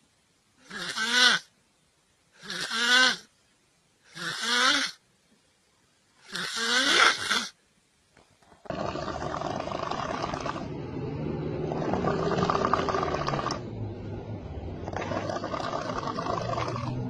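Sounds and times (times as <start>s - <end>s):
person snoring heavily: 4.1s - 5.0s, 8.6s - 13.6s, 14.9s - 17.0s.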